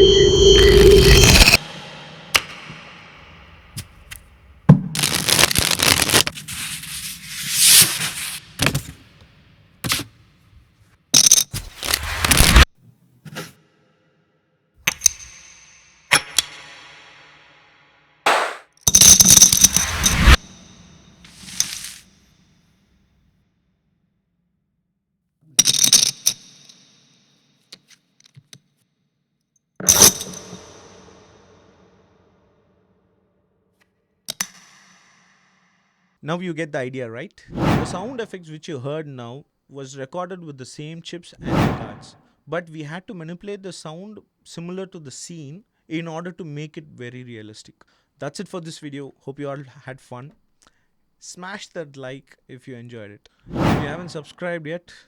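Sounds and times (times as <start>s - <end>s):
poker chips and cards clattering: 21.3s - 22.0s.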